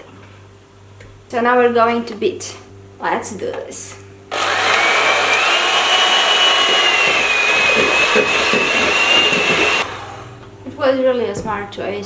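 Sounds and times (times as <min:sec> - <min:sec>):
electric mixer motor whine: 0:04.3 - 0:10.5.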